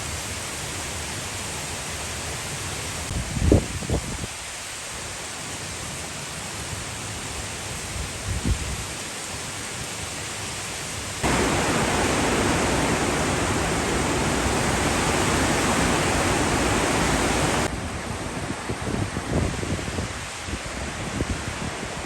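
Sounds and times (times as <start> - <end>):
heavy rain: 8.8 - 22.0
strong wind rushing: 11.2 - 21.8
gusts buffeting microphone: 11.2 - 22.0.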